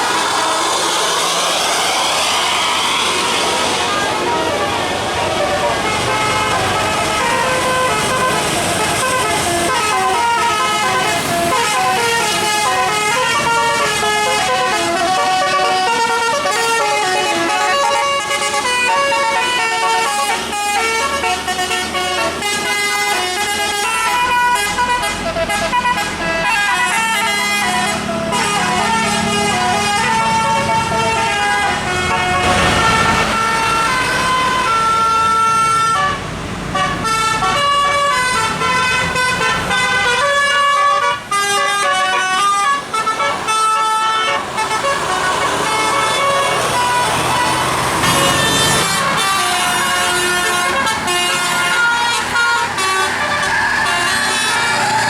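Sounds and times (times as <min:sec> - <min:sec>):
brief rush of noise: 0:00.0 - 0:04.6
bus engine: 0:00.0 - 0:55.0
bus musical air horn: 0:00.0 - 0:55.0.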